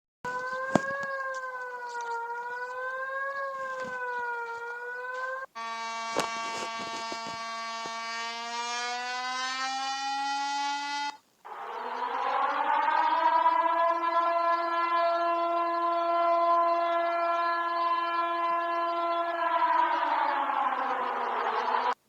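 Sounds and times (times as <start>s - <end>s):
electronic emergency alert tones: 0.3s - 22.0s.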